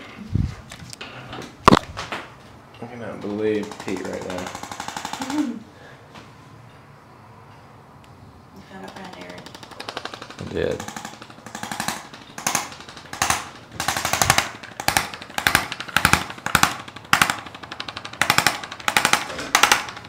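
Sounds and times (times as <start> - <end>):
handheld device rattling taps: 8.8 - 20.0.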